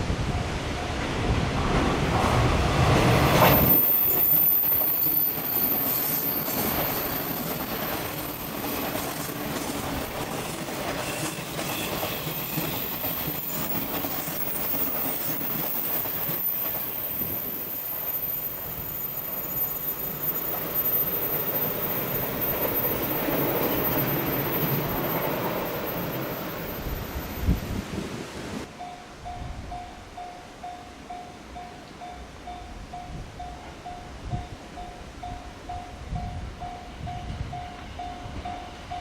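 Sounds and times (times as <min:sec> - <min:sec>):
train wheels clicking over rail joints: 0:01.7 - 0:17.6
train wheel squeal: 0:02.8 - 0:27.8, 0:34.3 - 0:39.0.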